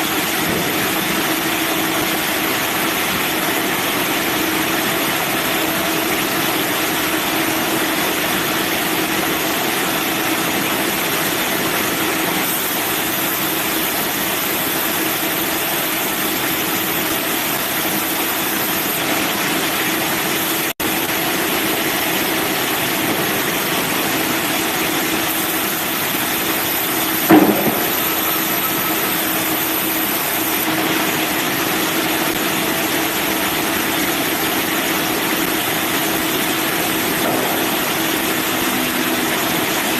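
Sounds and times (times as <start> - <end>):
sawmill engine running: 0.0 - 39.9
knock: 27.3 - 28.1.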